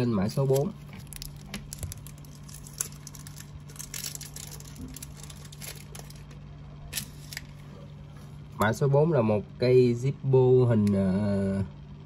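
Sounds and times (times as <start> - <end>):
steady low hum: 0.0 - 12.0
objects rustling: 0.3 - 8.4.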